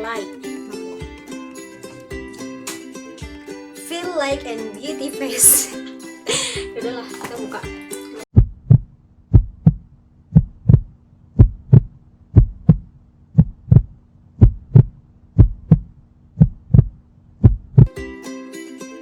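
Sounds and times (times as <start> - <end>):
heartbeat thumps: 8.3 - 17.9.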